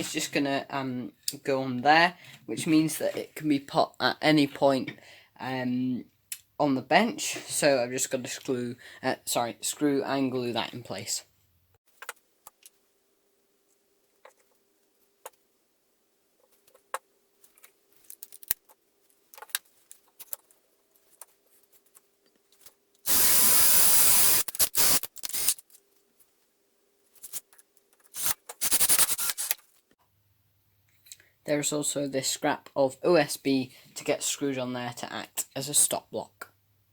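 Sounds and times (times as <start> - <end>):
cordless drill driving screws: 23.1 - 25.6, 28.2 - 29.6.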